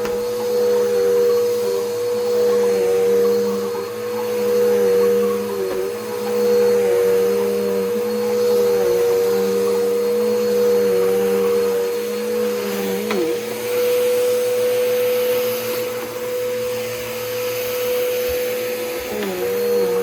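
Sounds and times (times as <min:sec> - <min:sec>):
vacuum cleaner running: 0:00.0 - 0:20.0
vacuum cleaner click: 0:12.9 - 0:13.4.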